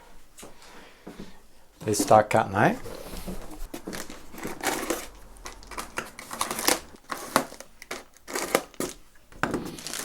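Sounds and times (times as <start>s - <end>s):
packaging scraping and crinkling: 2.8s - 10.0s.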